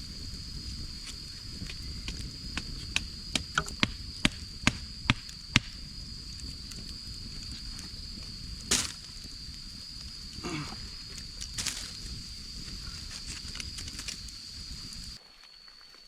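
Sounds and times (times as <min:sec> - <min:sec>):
high insect drone: 0:00.0 - 0:16.0
firewood being chopped: 0:01.1 - 0:05.8, 0:08.6 - 0:09.3, 0:11.5 - 0:12.0.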